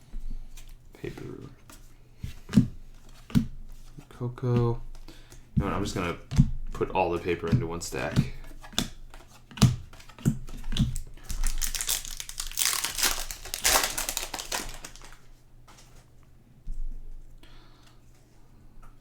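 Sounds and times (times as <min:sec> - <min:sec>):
cards tapping as stacked: 0:04.6 - 0:15.2
foil wrapper crinkling: 0:10.8 - 0:15.3.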